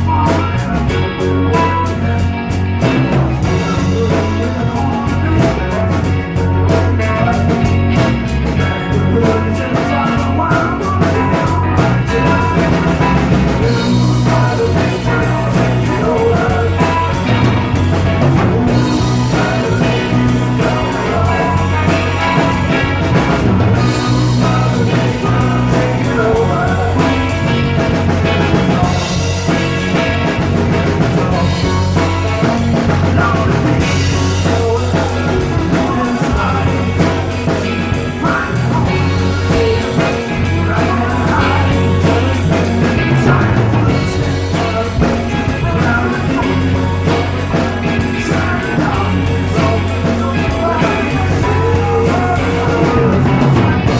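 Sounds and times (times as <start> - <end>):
bass guitar: 0.0 - 53.9
drum kit with cymbals: 0.0 - 53.9
electric guitars: 0.0 - 53.9
person singing: 0.0 - 53.9.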